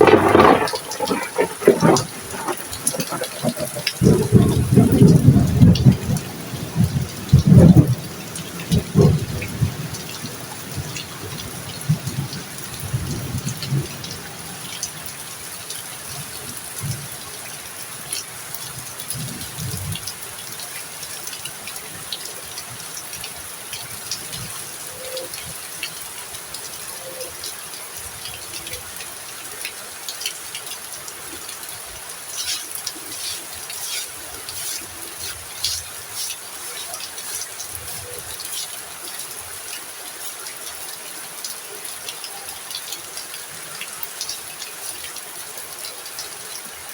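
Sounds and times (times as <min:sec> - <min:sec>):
low rumble of thunder: 0:00.0 - 0:14.7
heavy rain falling: 0:00.0 - 0:46.9.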